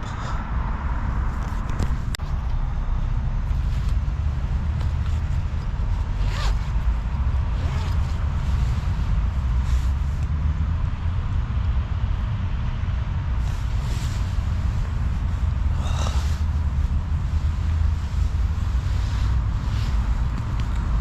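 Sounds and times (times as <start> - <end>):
road traffic rumble: 0.0 - 21.0
bag unzipping and rustling: 6.0 - 9.0.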